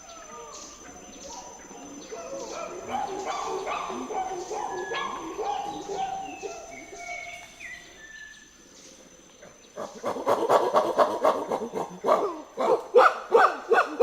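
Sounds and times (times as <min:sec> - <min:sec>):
whistled bird notes: 0:00.0 - 0:09.0.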